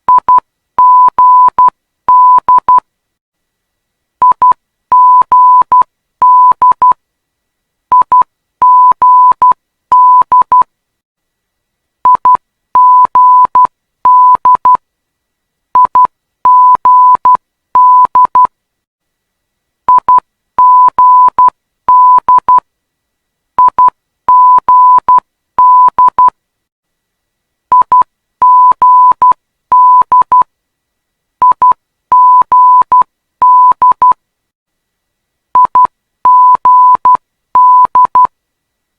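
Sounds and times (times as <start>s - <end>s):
morse code tone: 27.8s - 30.4s, 31.4s - 34.2s, 35.6s - 38.3s.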